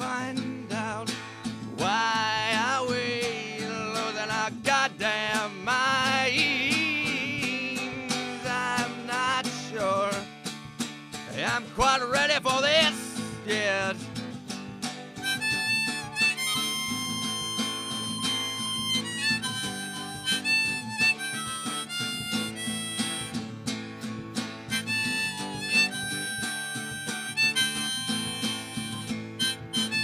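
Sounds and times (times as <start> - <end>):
strummed acoustic guitar: 0.0 - 30.0
harmonica melody: 1.7 - 10.2, 14.8 - 30.0.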